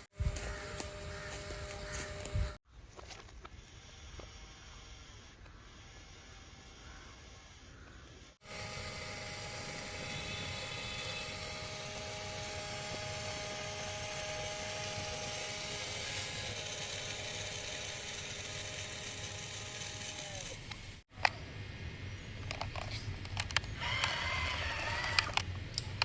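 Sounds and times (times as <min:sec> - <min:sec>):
toy electric motor whining: 0:00.1 - 0:02.6, 0:03.3 - 0:21.0, 0:22.8 - 0:25.6
sharp plastic clicks: 0:22.4 - 0:24.1.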